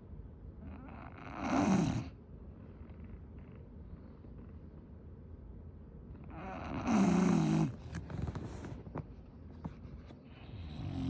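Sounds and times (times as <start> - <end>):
dog snoring: 0.7 - 2.2, 6.3 - 8.8, 10.3 - 11.0
quiet breathing: 9.6 - 11.0.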